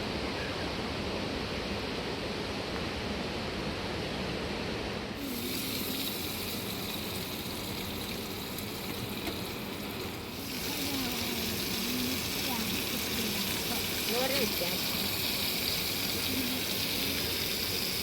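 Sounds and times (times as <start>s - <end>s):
rushing water: 5.0s - 18.0s
bright hissing noise: 5.2s - 18.0s.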